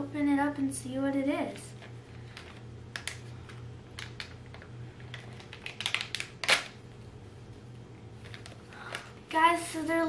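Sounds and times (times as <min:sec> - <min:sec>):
plastic packet crinkling: 0:04.0 - 0:06.8.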